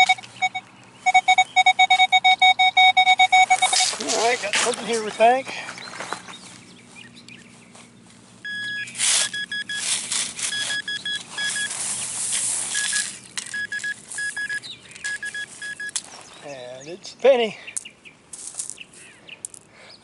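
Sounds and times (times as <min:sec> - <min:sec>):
metal detector beeping: 0:00.0 - 0:04.4, 0:08.4 - 0:16.1
dirt being scraped and dug: 0:03.3 - 0:06.4, 0:08.7 - 0:16.6.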